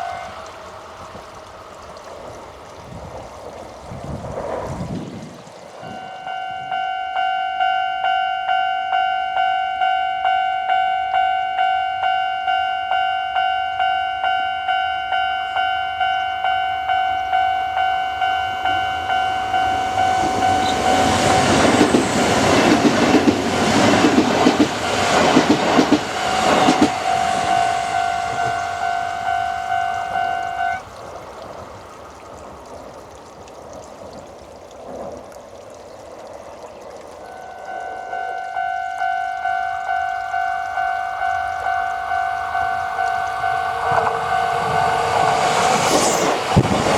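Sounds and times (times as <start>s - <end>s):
level-crossing alarm bell: 5.8s - 30.8s, 37.2s - 46.0s
train wheels clacking over rails: 19.6s - 29.2s, 43.4s - 46.9s.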